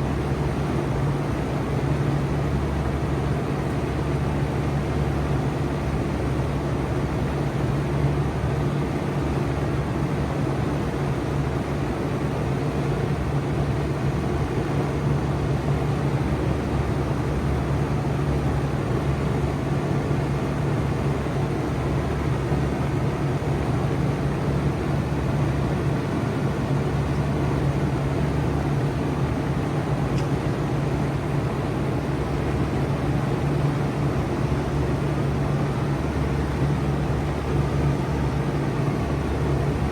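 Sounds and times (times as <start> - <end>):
fan air rushing: 0.0 - 39.9
heat pump low hum: 0.0 - 39.9.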